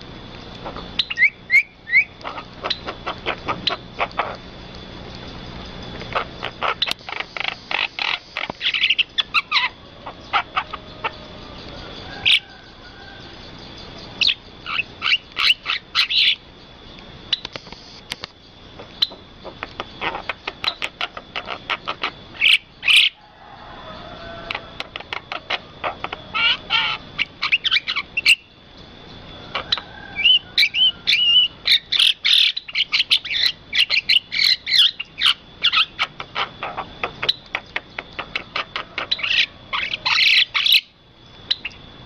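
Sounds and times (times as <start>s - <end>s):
birds chirping and calling: 0.2s - 41.9s
thin steady high tone: 3.7s - 21.3s.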